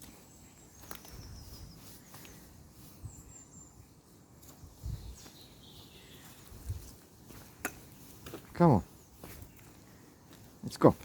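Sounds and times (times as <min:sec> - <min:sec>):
faint high bird chirps: 0:00.0 - 0:06.9.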